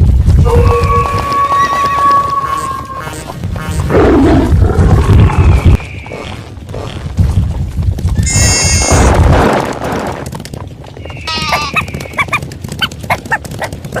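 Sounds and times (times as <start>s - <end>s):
rumble of running hooves: 0.0s - 14.0s
long high animal call: 11.1s - 12.4s
short high animal calls: 11.2s - 12.4s.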